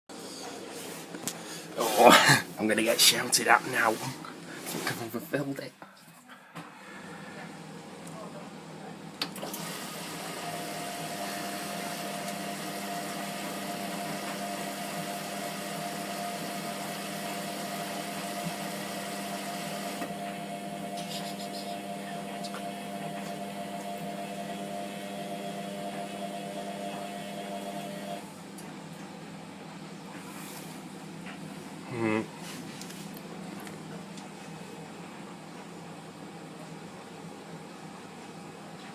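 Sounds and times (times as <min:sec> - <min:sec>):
washing machine hum: 0:00.1 - 0:38.9
water hissing into washing machine: 0:09.4 - 0:20.1.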